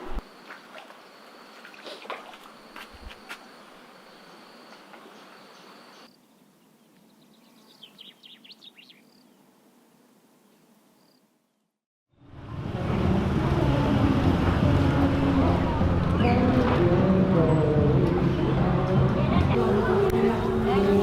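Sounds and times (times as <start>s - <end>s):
hissy background: 0.0s - 11.6s.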